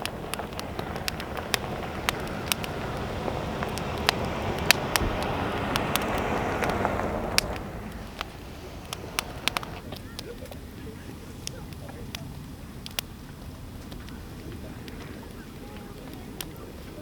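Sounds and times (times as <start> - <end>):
rushing noise: 0.0 - 11.5
campfire crackling and popping: 0.0 - 17.0.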